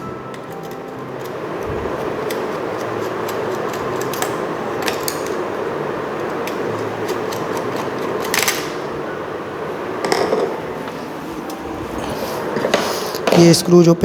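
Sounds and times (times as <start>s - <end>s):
steady background noise: 0.0s - 14.0s.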